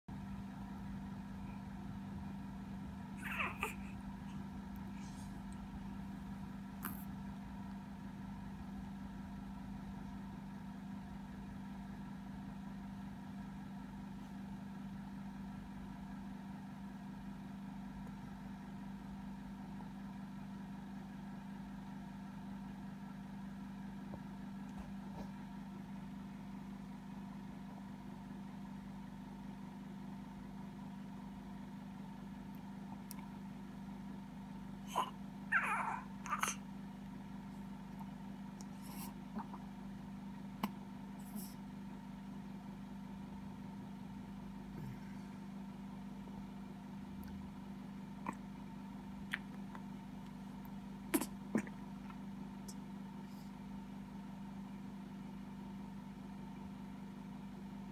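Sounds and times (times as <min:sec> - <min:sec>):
low electrical hum: 0:00.1 - 0:57.9
squeaky yawn: 0:34.9 - 0:36.6.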